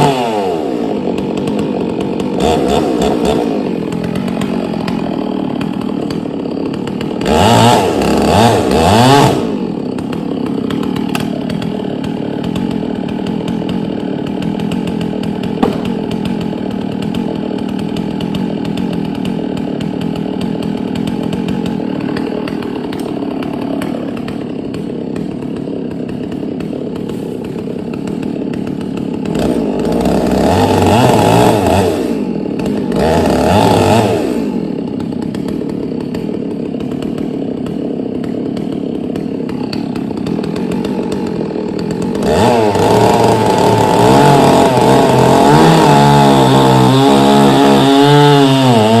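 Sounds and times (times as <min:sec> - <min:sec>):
chainsaw revving: 0:00.0 - 0:49.0.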